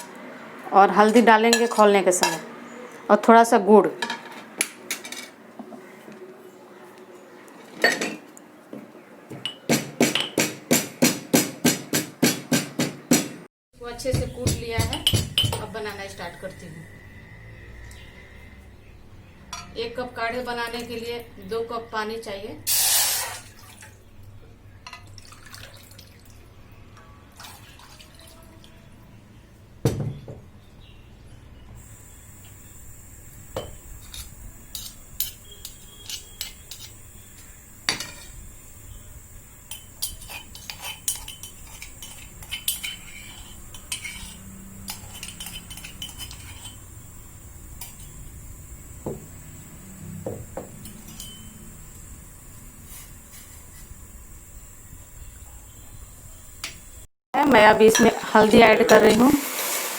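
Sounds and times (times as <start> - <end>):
cooking pot and utensils clinking: 1.0 - 2.5, 4.0 - 5.4, 7.7 - 8.3, 33.6 - 38.4, 39.7 - 46.9, 50.6 - 51.7, 57.8 - 59.9.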